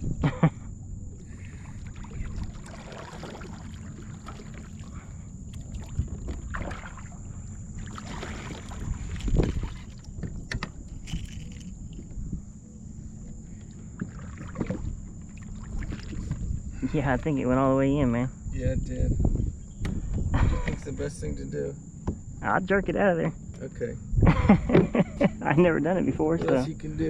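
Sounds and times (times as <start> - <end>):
wind rumble on microphone: 0.0 - 27.0
water splashing against hull: 1.2 - 12.3, 13.2 - 17.4.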